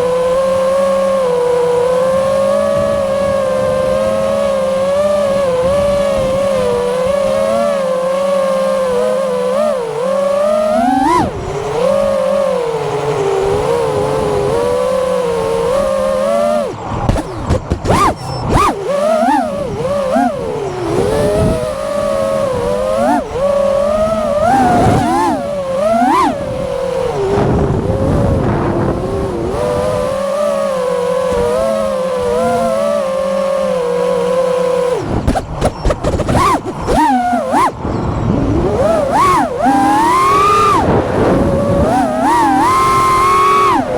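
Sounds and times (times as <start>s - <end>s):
drone motors whining: 0.0s - 43.9s.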